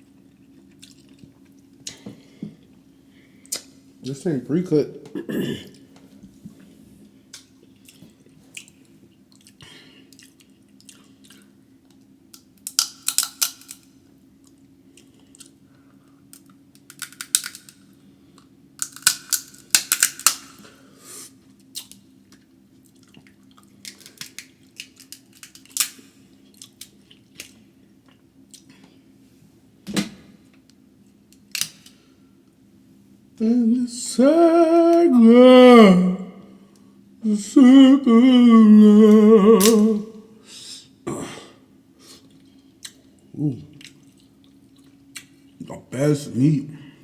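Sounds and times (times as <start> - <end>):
chewing and smacking: 0.0 - 2.0, 7.4 - 13.8, 14.4 - 15.6, 21.5 - 29.0, 42.2 - 45.6
steady low hum: 0.0 - 47.0
crab shell cracking: 12.3 - 13.9, 16.3 - 17.9, 18.8 - 20.7, 23.0 - 27.6, 31.3 - 32.0, 39.6 - 39.9.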